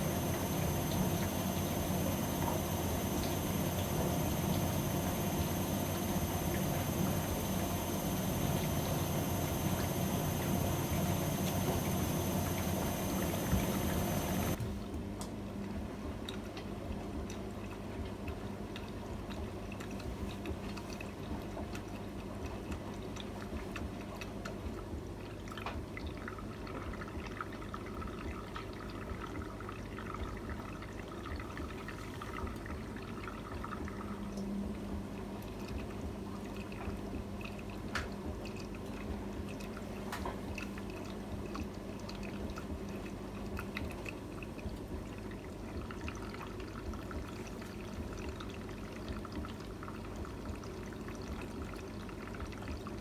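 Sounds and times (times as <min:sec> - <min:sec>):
low hum: 0:00.0 - 0:14.6
water splashing in washing machine: 0:00.0 - 0:15.0, 0:15.7 - 0:53.0.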